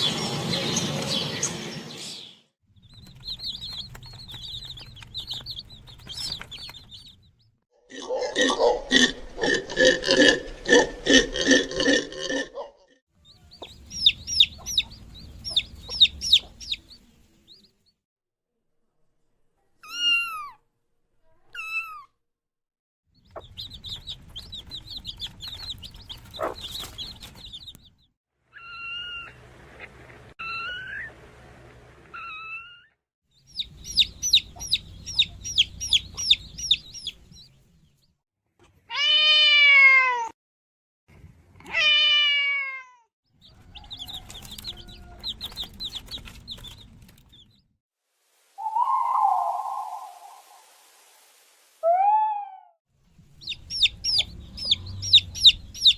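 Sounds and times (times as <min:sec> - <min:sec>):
high-pitched bird chirping: 0:00.0 - 0:07.5, 0:13.2 - 0:17.7, 0:23.2 - 0:29.4, 0:33.4 - 0:37.6, 0:43.4 - 0:47.6, 0:53.4 - 0:55.9.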